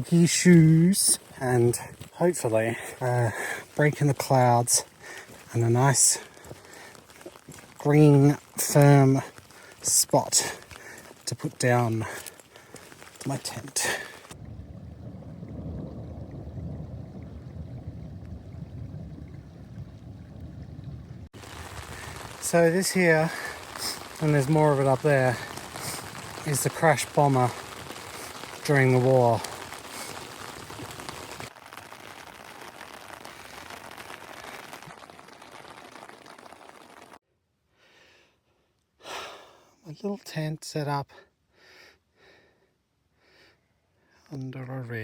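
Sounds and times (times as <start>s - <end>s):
rain pattering: 0.0s - 37.2s
wind buffeting microphone: 14.3s - 22.4s.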